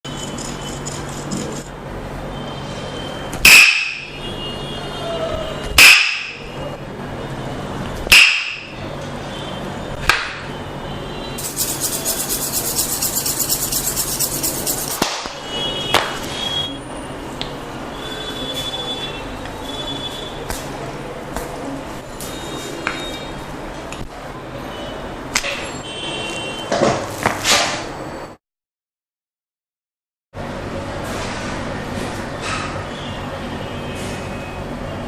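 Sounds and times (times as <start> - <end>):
fast even tapping: 11.4 - 15.0.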